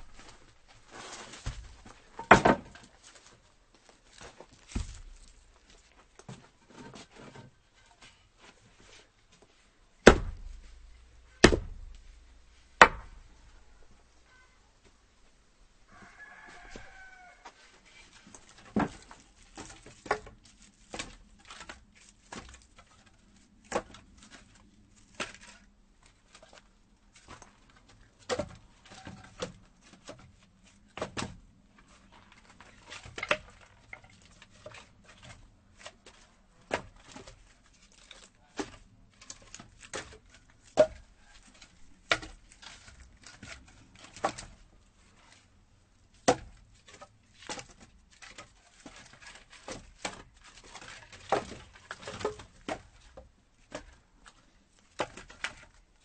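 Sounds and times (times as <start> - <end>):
axe chopping firewood: 1.4 - 2.8, 4.7 - 5.4, 10.0 - 12.0, 12.8 - 13.3, 23.7 - 24.4, 28.3 - 29.5, 31.0 - 31.4, 38.6 - 41.4, 42.0 - 44.6, 46.2 - 52.9
rooster crowing: 15.9 - 17.6.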